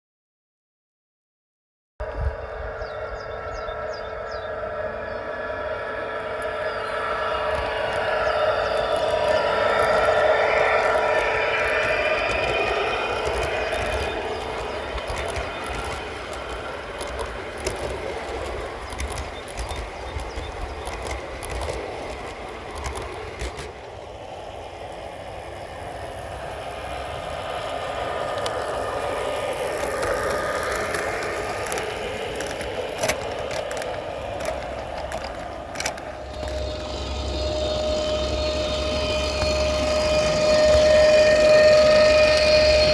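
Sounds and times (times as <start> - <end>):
model train rattling: 3.1 - 42.9
sharp clicks: 6.4 - 23.7.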